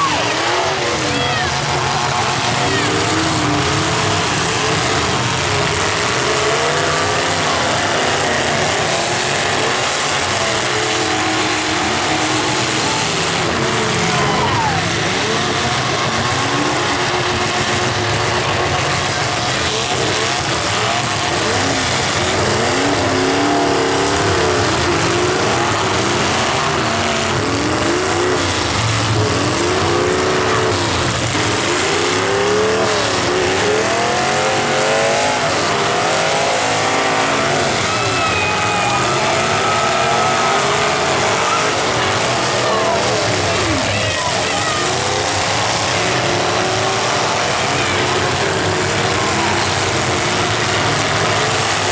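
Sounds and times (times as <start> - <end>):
car engines revving hard: 0.0 - 51.9.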